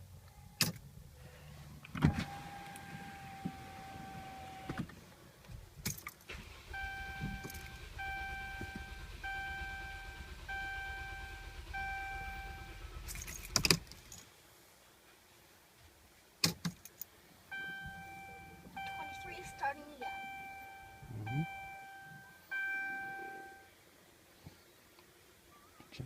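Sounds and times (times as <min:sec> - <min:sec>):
ignition clicks: 0:05.9 - 0:14.2
dashboard beeps: 0:06.8 - 0:12.8, 0:17.5 - 0:23.7
keys rattling: 0:13.0 - 0:14.3
dashboard chime: 0:17.5 - 0:23.7.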